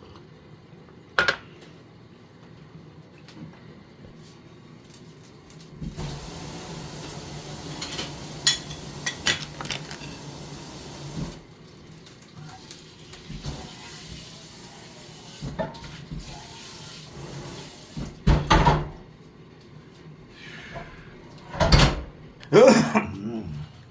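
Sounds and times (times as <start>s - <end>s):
water running: 5.8s - 18.2s
dishes clattering: 7.8s - 10.3s
dishes clinking: 7.8s - 10.3s.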